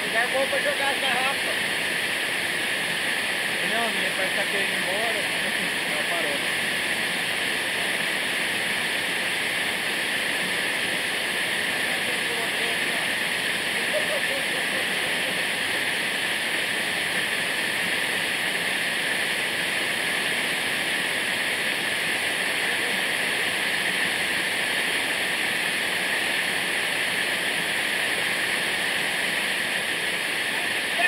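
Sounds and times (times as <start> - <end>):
waterfall rushing: 0.0 - 31.0.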